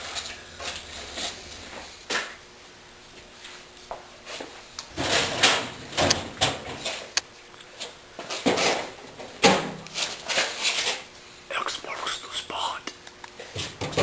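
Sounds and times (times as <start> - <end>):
objects knocking scraping and rustling: 4.2 - 7.2, 7.8 - 11.1, 13.3 - 14.0.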